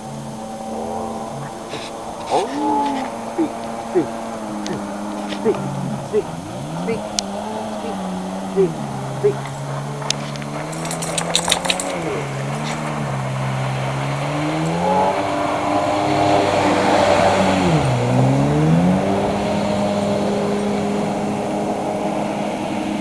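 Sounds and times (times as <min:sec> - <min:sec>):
jet ski engine running: 0:11.8 - 0:23.0.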